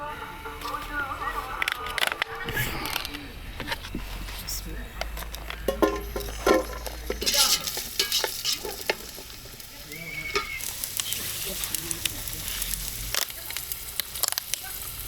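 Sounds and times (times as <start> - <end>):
meat sizzling in a pot: 5.2 - 15.0.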